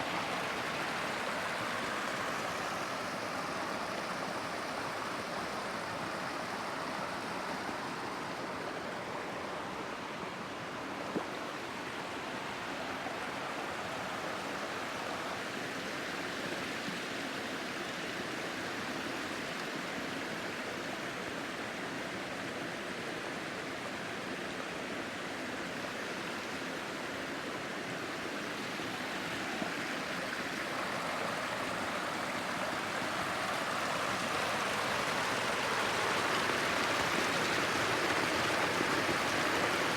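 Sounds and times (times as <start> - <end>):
waterfall rushing and splashing: 0.0 - 17.4, 26.3 - 39.9.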